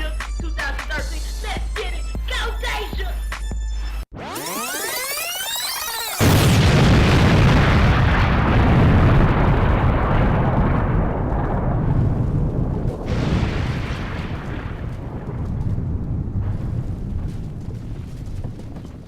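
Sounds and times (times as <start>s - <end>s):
explosion with deep rumble: 6.2s - 19.0s.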